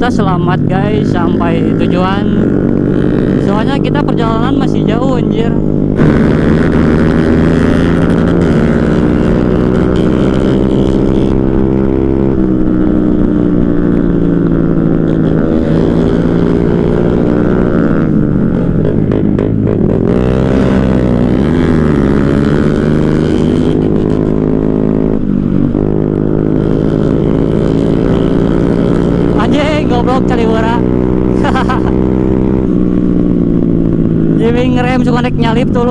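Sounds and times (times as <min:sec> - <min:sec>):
motorcycle engine running: 0:00.0 - 0:35.9.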